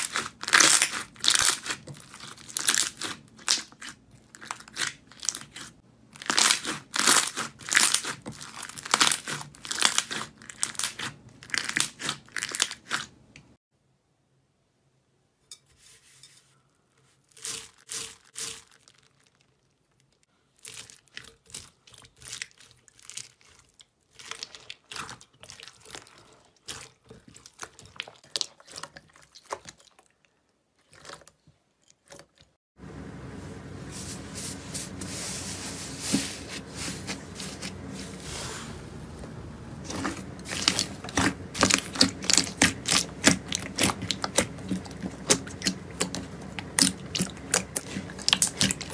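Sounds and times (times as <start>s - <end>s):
slime crackling and popping: 0.0s - 13.1s, 39.8s - 48.9s.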